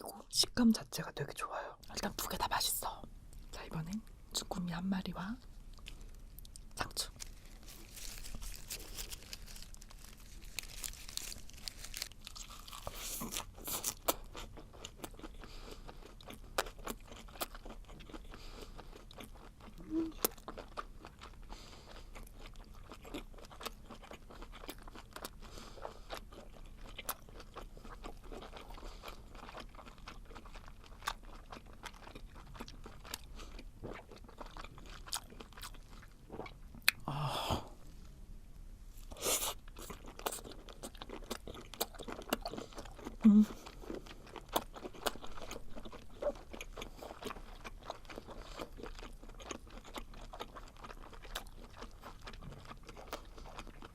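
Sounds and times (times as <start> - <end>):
lettuce crunching: 5.8 - 15.2
wet chewing mouth sounds: 5.8 - 37.1, 39.1 - 53.9.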